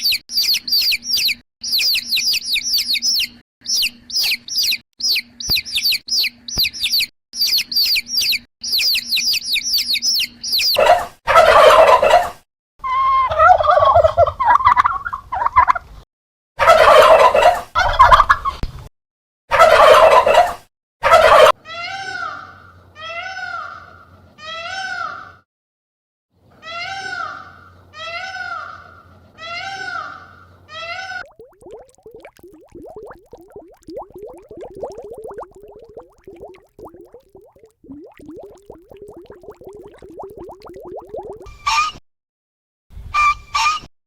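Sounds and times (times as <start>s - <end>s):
small birds chirping: 0.0s - 10.8s
turkey gobbling: 10.8s - 12.3s, 13.3s - 15.8s, 16.7s - 18.5s, 19.6s - 20.5s.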